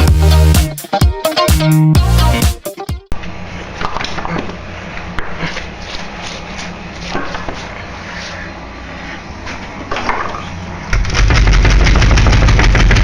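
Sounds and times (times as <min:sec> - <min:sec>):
noisy clatter: 0:09.9 - 0:13.0.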